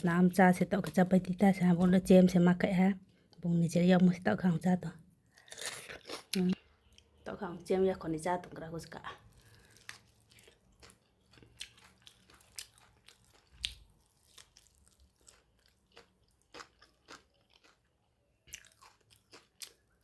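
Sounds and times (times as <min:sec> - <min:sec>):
person chewing crunchy food: 0:05.3 - 0:07.2, 0:09.2 - 0:20.0.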